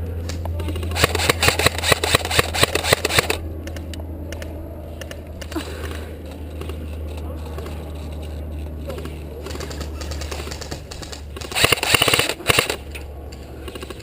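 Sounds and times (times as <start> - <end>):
steady low hum: 0.0 - 14.0
airsoft gun full-auto burst: 0.9 - 3.4, 9.5 - 12.8.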